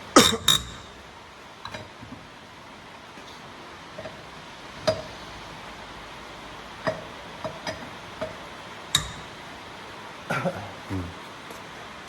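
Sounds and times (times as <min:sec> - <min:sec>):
metallic clicks of wheel nuts and tools: 0:00.3 - 0:02.0, 0:04.0 - 0:05.3, 0:06.8 - 0:09.5.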